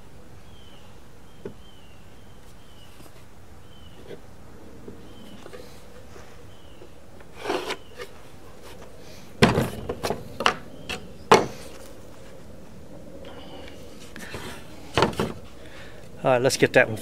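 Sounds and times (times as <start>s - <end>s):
wood rubbing: 3.9s - 16.2s
wood knocking and clattering: 8.7s - 11.6s, 14.9s - 15.4s.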